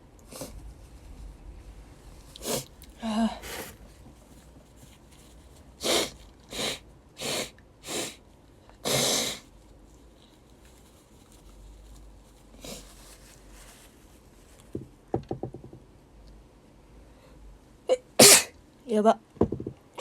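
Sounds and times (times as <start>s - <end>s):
young woman sneezing: 8.8s - 9.4s, 17.9s - 18.5s.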